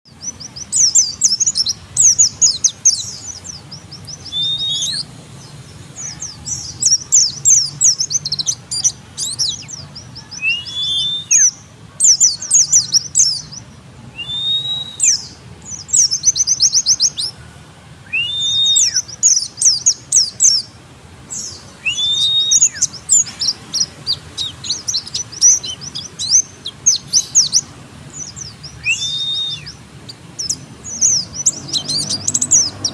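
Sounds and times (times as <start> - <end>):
bird chirps and trills: 0.1 - 32.9.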